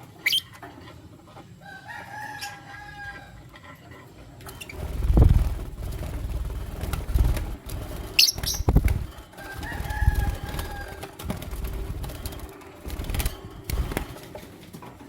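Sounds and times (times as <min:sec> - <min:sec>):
wings flapping with low thuds: 0:04.4 - 0:15.0.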